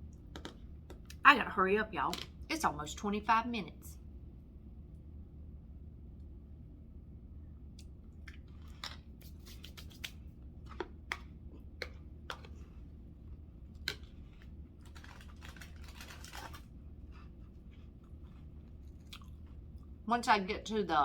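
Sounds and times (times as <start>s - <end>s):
crackers crunching: 13.7s - 20.0s.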